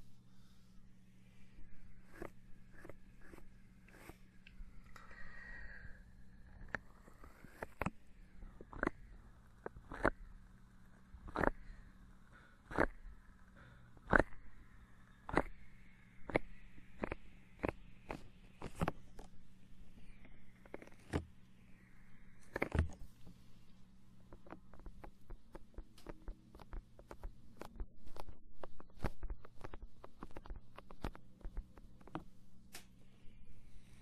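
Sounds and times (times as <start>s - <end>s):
faint low hum: 0.0s - 34.0s
sharp clicks and crackles: 6.6s - 10.3s, 11.1s - 11.7s, 14.0s - 14.4s, 15.2s - 15.6s, 24.2s - 32.9s.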